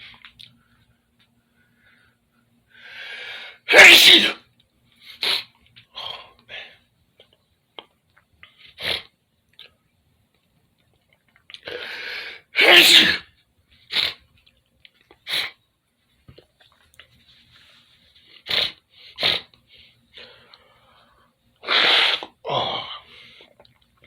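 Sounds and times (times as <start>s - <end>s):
sharp bursts of breath: 1.6s - 4.4s, 11.7s - 13.2s, 18.4s - 22.3s
person sneezing: 3.6s - 4.4s, 11.7s - 13.3s, 21.6s - 23.0s.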